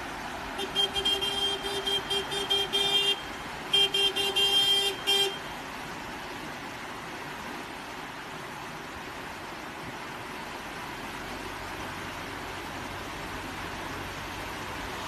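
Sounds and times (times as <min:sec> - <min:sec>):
car horn toots: 0:00.6 - 0:05.4.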